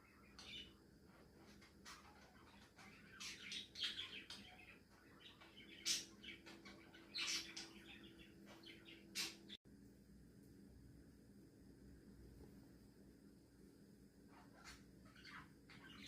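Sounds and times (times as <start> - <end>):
budgies chirping softly: 0.0 - 9.6, 14.2 - 16.0
faint steady hum: 0.0 - 16.0.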